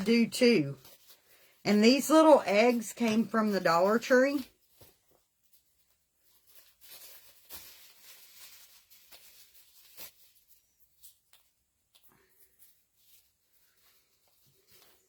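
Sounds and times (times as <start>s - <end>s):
craft materials rustling: 0.0s - 11.3s.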